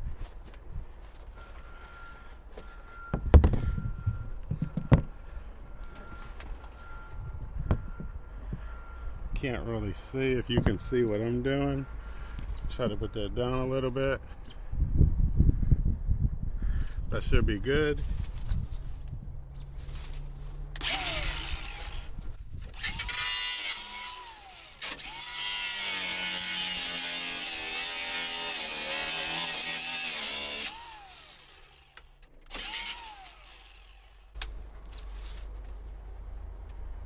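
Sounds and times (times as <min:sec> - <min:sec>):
cordless power tool whirring: 0:20.8 - 0:34.5.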